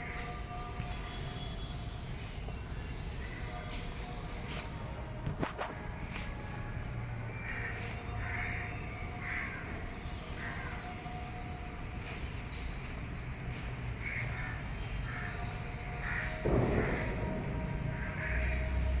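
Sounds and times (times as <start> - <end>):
crows cawing: 7.4 - 9.8, 14.0 - 19.0.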